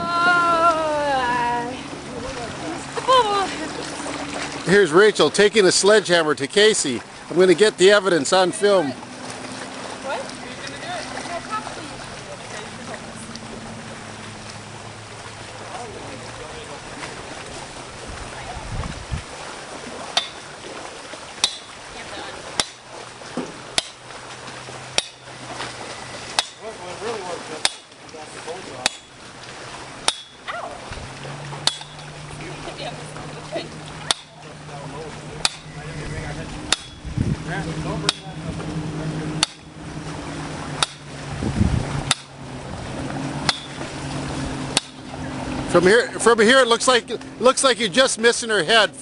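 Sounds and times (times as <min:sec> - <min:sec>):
steady low hum: 0:00.0 - 0:49.0
sledgehammer striking metal: 0:21.4 - 0:21.7, 0:25.0 - 0:25.3, 0:26.4 - 0:26.6, 0:27.6 - 0:27.9, 0:28.8 - 0:29.1, 0:30.0 - 0:30.4, 0:31.6 - 0:32.1, 0:35.4 - 0:35.7, 0:36.7 - 0:37.0, 0:39.4 - 0:39.7, 0:40.8 - 0:41.1, 0:43.4 - 0:43.8, 0:44.7 - 0:45.0.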